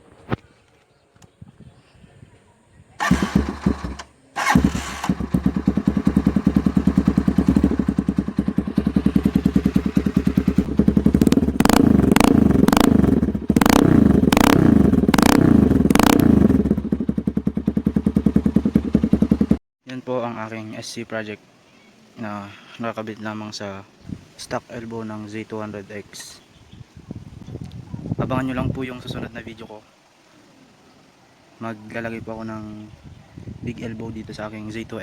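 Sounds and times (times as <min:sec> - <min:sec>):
loud motorcycle engine idling: 0:03.0 - 0:19.6
quick throttle blips: 0:03.0 - 0:19.6.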